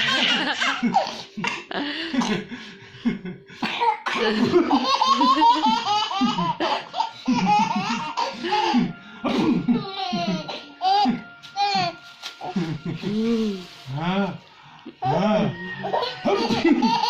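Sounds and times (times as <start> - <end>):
child laughing: 0.0 - 1.2, 4.4 - 8.8, 15.9 - 17.0
child coughing: 0.0 - 2.4, 3.6 - 4.6.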